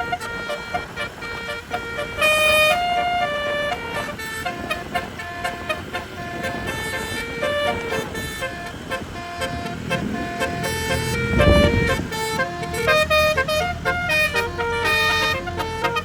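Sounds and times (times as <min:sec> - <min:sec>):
bus air horn melody: 0:00.0 - 0:16.0.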